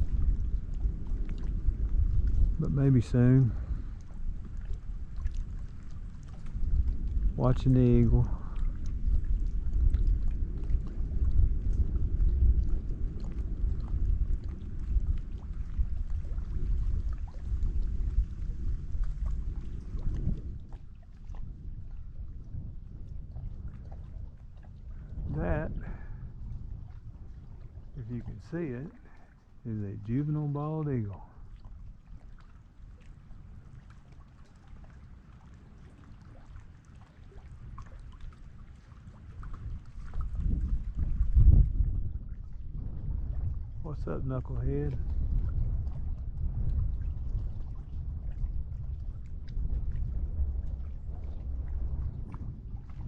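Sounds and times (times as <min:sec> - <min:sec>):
water lapping and trickling: 0:00.0 - 0:53.0
wind buffeting microphone: 0:00.0 - 0:53.0
small splashes: 0:13.2 - 0:22.1, 0:23.2 - 0:30.2, 0:31.0 - 0:41.2.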